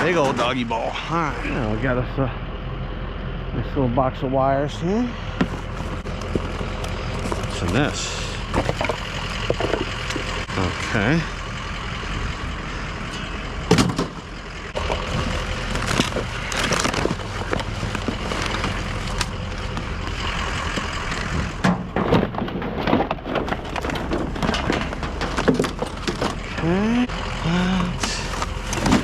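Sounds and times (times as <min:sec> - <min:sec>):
vehicle engine humming: 0:00.0 - 0:29.0
junk clattering and knocking: 0:05.3 - 0:10.9, 0:13.6 - 0:29.0.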